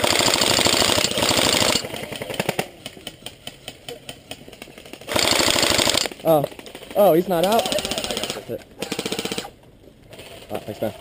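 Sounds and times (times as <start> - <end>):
airsoft gun full-auto firing: 0.0 - 2.7, 5.1 - 6.1, 7.4 - 9.5.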